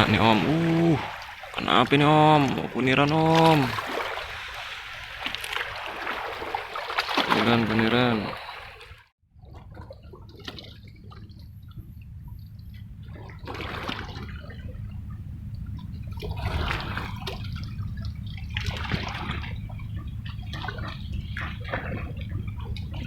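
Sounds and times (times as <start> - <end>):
sea water washing and splashing: 0.0 - 11.9, 13.0 - 23.0
steady low rumble: 9.4 - 23.0.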